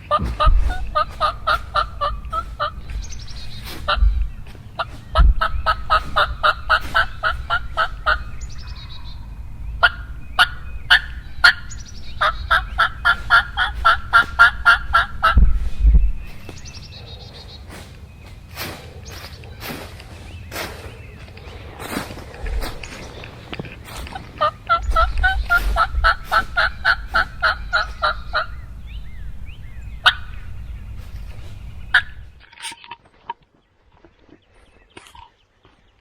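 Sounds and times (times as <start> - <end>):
turkey call yelps: 0.0 - 15.4, 24.0 - 28.8, 30.0 - 30.5, 31.9 - 32.2
low thumps: 0.0 - 16.9, 19.6 - 32.4.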